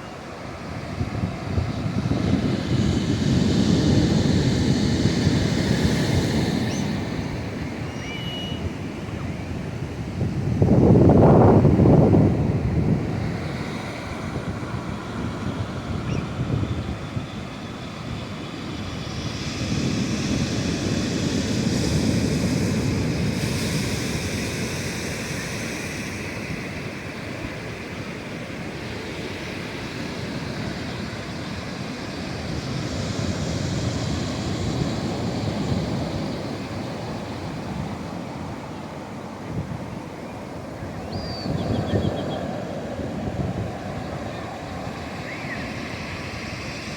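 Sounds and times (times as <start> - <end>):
sea waves breaking on shore: 0.0 - 46.9.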